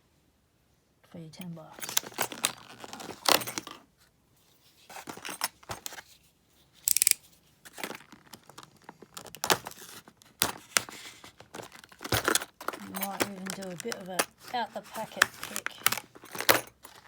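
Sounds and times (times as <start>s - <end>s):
packaging rustling and clicking: 1.8s - 3.8s, 4.8s - 6.2s, 6.8s - 17.0s.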